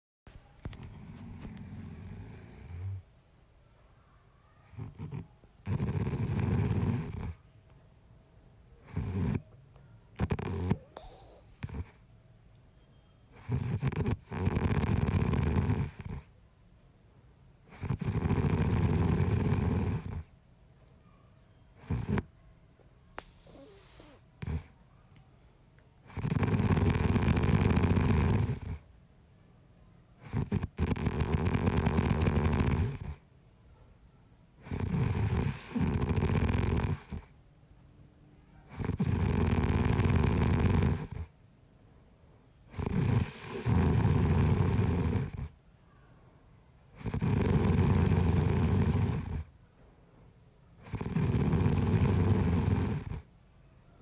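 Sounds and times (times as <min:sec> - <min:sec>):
man snoring: 0:04.8 - 0:07.3, 0:10.2 - 0:11.9, 0:13.4 - 0:16.2, 0:17.8 - 0:20.2, 0:26.1 - 0:28.8, 0:30.3 - 0:33.1, 0:34.7 - 0:37.2, 0:38.8 - 0:41.2, 0:42.7 - 0:45.5, 0:47.0 - 0:49.4, 0:50.9 - 0:53.2.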